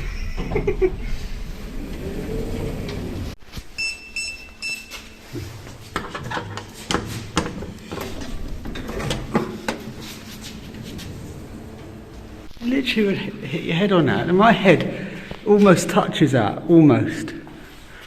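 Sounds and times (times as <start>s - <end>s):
lift running rumble: 0.0s - 3.4s, 7.3s - 13.6s.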